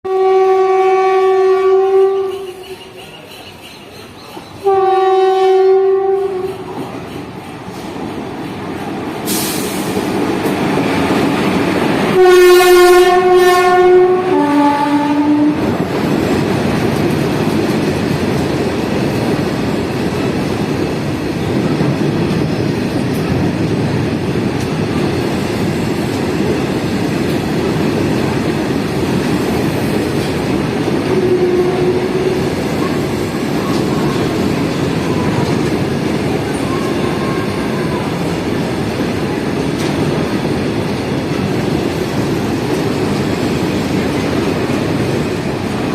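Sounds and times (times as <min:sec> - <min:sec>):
train horn blast: 0:00.1 - 0:03.3, 0:04.6 - 0:06.6, 0:12.1 - 0:15.7, 0:31.0 - 0:33.0
train wheels rumbling on rail: 0:00.1 - 0:45.9.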